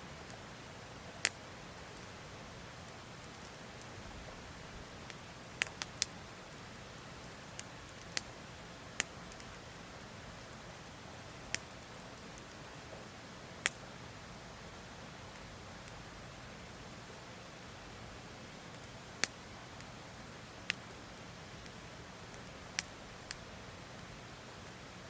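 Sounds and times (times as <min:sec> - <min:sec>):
faint steady hiss: 0:00.0 - 0:25.0
wood fire crackling and popping: 0:18.7 - 0:19.9, 0:20.6 - 0:24.1.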